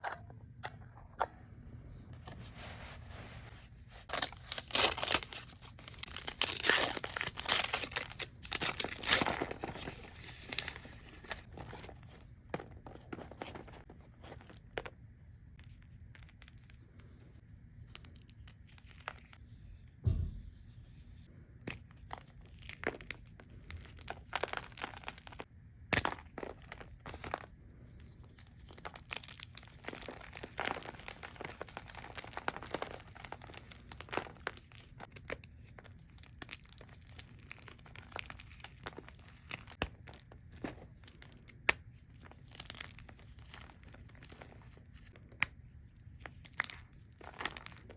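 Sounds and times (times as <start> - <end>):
low thump: 20.0 - 20.8
wrapping crinkling: 28.2 - 47.9.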